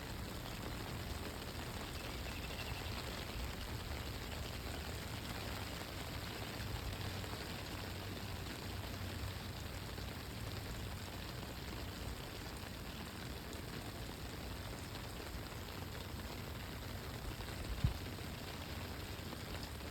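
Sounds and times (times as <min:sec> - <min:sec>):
rain falling: 0:00.0 - 0:19.9.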